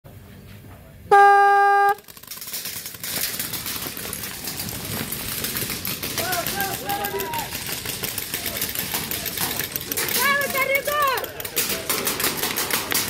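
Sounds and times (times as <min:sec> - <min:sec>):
horn tone: 0:01.1 - 0:02.0
rapid clicks: 0:02.0 - 0:13.0
rustling: 0:02.0 - 0:13.0.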